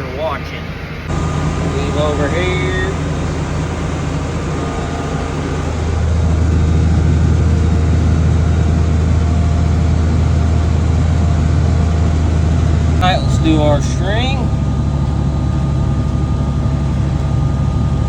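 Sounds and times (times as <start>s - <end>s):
tractor diesel engine running: 0.0s - 18.0s.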